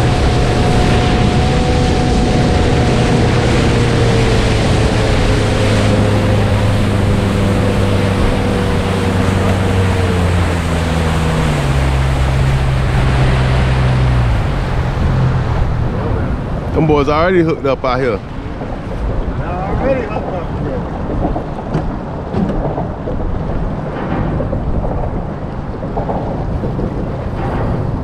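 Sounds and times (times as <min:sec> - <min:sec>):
boat motor running: 0:00.0 - 0:28.0
wind and water rushing: 0:00.0 - 0:28.0.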